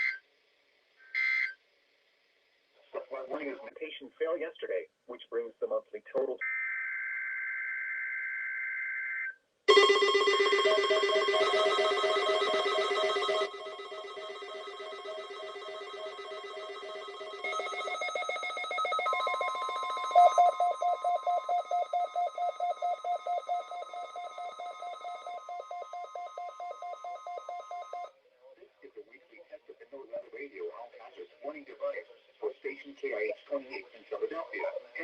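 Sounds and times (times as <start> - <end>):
warbling data burst: 9.7 - 26.7
rapid beeping: 9.7 - 28.1
steady alarm tones: 9.7 - 28.1.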